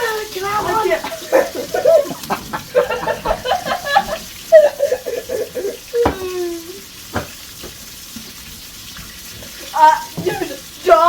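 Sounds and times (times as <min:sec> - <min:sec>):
voices talking: 0:00.0 - 0:06.8, 0:09.7 - 0:11.0
meat sizzling in frying oil: 0:00.0 - 0:11.0
sharp knocks: 0:07.1 - 0:07.8.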